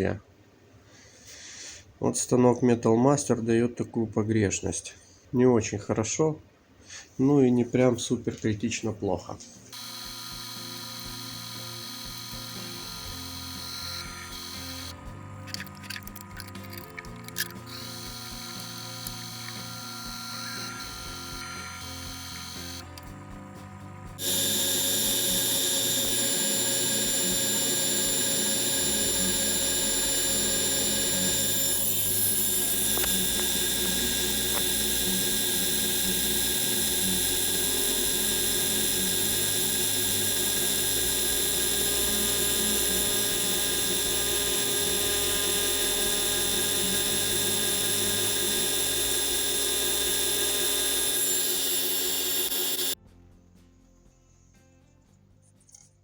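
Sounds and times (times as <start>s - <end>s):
machine tool whining: 9.7s - 23.2s, 24.1s - 53.0s.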